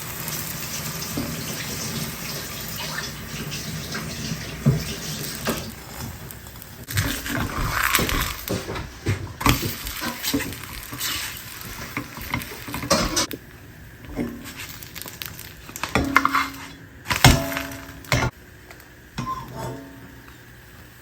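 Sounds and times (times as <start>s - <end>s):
dishes and cutlery clinking: 11.8s - 13.3s, 15.8s - 18.3s, 19.2s - 20.1s.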